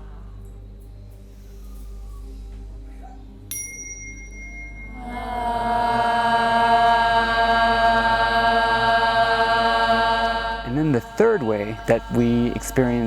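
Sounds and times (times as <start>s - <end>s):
small bell ringing: 3.5s - 5.0s
low drone: 4.2s - 13.0s
group of voices chanting: 5.0s - 13.0s.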